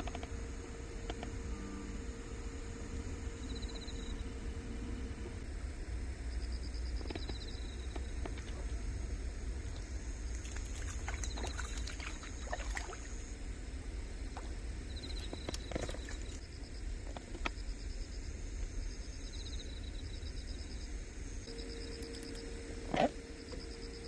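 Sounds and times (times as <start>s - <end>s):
steady low rumble: 0.0s - 16.9s
faint high-pitched pulsed chirping: 0.5s - 13.4s, 14.8s - 16.8s, 17.6s - 24.0s.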